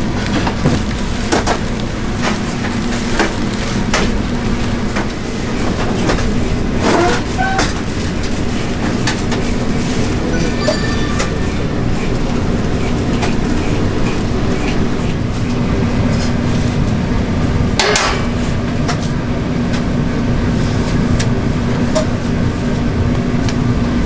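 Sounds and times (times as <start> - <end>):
low machine hum: 0.0 - 17.8.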